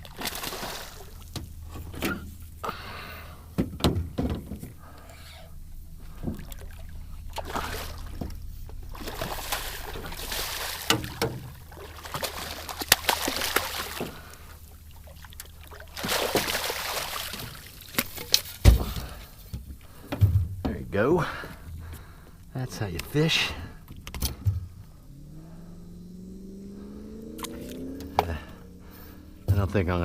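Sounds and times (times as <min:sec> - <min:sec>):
water splashing beside boat: 0:00.0 - 0:25.9
heavy thump: 0:18.6 - 0:20.8.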